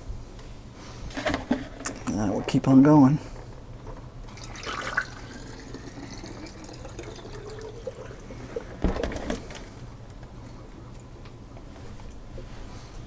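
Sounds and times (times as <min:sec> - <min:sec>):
water pouring into reservoir: 0:04.3 - 0:08.7.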